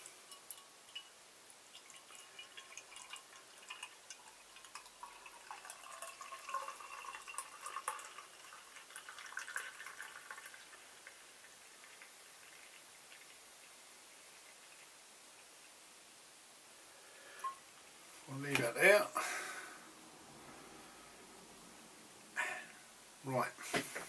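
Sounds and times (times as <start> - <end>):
beer pouring into a glass: 0.1 - 13.7.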